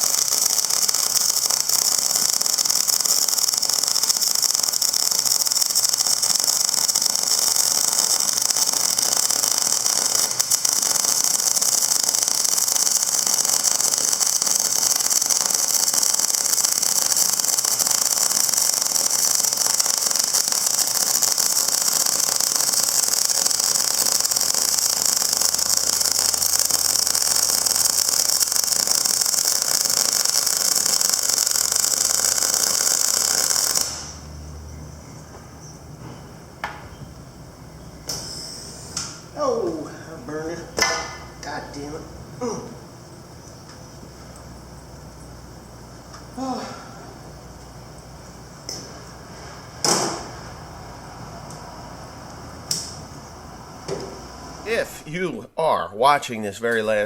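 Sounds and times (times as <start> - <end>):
loud steady hiss: 0.0 - 35.0, 37.2 - 43.4, 44.0 - 55.6
machine whir: 0.0 - 35.1.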